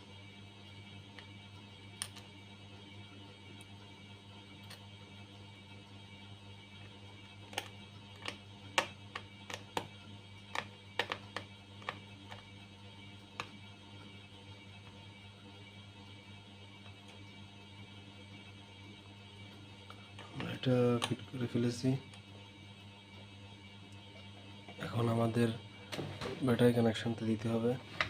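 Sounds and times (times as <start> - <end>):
steady low hum: 0.0 - 28.0
small parts clicking and tapping: 7.5 - 9.9, 10.5 - 12.5.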